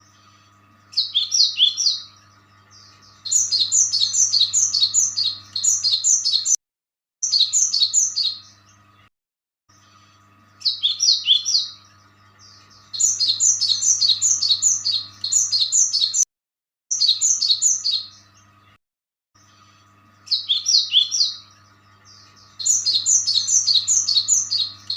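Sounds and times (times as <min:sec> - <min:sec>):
faint steady hum: 0:00.0 - 0:06.5, 0:09.7 - 0:16.2, 0:19.4 - 0:24.9
small birds chirping: 0:00.0 - 0:06.6, 0:07.2 - 0:09.1, 0:09.7 - 0:16.3, 0:16.9 - 0:18.8, 0:19.4 - 0:24.9.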